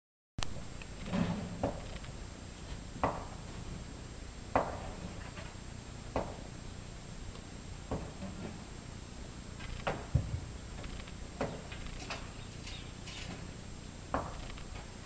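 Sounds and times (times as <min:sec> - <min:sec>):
blows striking a wall: 0:03.0 - 0:03.5, 0:04.5 - 0:05.4, 0:06.1 - 0:06.5, 0:09.8 - 0:10.6, 0:13.3 - 0:14.9.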